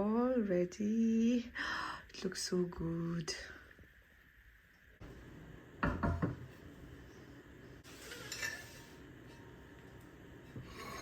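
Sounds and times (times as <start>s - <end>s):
dishes and cutlery clattering: 7.9s - 11.0s.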